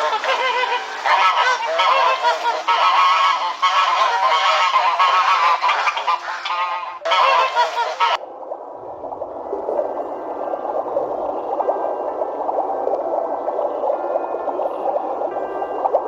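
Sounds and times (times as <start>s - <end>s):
geese honking: 0.0s - 8.2s.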